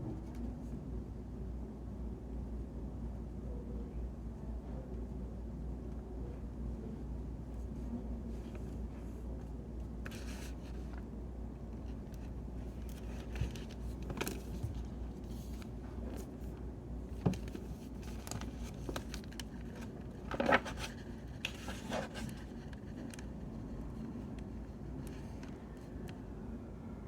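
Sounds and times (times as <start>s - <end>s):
steady low background noise: 0.0s - 27.0s
soft desk clicks and scrapes: 7.5s - 11.1s, 11.7s - 26.2s
pen and paper rustling: 9.9s - 11.0s, 11.8s - 25.9s.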